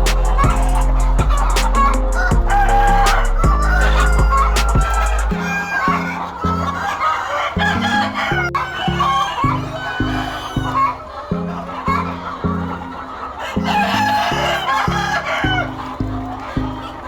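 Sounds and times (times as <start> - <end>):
music with pulsing bass: 0.0 - 5.4
chickens clucking: 0.0 - 17.0.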